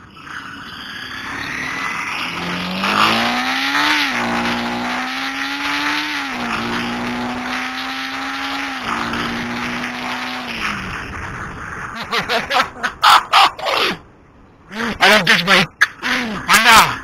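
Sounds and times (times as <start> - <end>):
motorcycle engine accelerating: 0.2 - 11.9.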